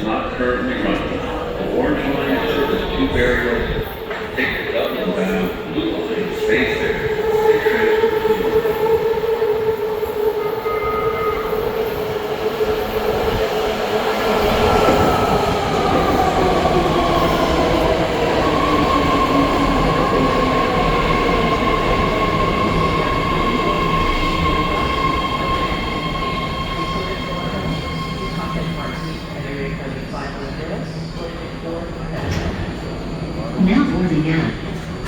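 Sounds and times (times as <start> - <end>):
rumble of train cars: 0.0 - 35.0.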